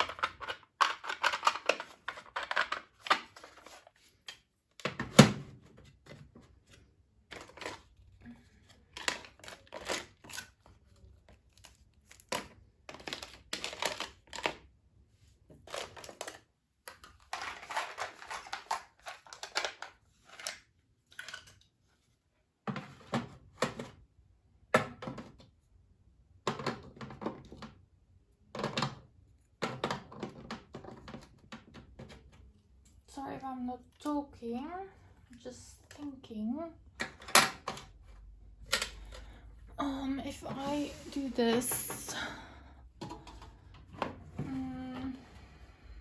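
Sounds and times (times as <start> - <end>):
plastic items rustling and clicking: 0.0 - 14.8, 15.5 - 22.0, 28.5 - 32.9, 36.9 - 45.2
crinkling: 6.3 - 14.7, 15.6 - 21.7.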